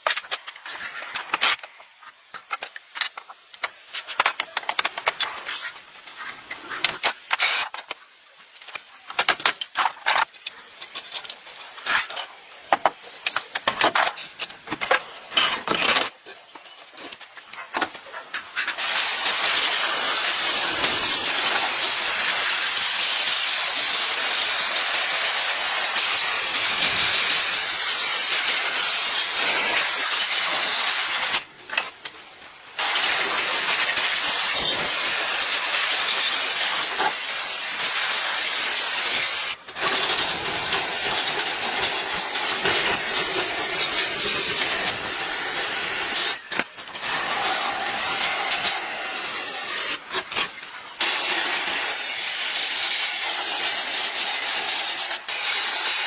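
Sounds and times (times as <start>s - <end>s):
loud steady hiss: 17.0s - 56.0s.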